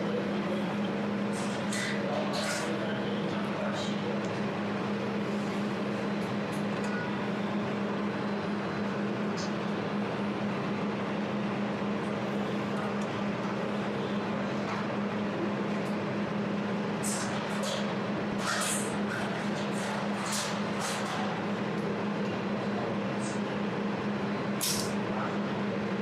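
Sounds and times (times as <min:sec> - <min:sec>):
machine humming and whirring: 0:00.0 - 0:26.0.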